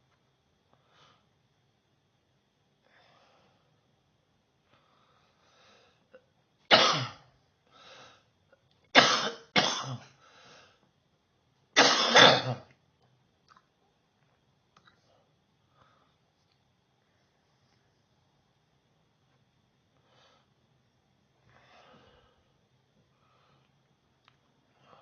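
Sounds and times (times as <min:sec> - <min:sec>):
person coughing: 0:06.7 - 0:07.2, 0:09.0 - 0:10.2, 0:11.8 - 0:12.7.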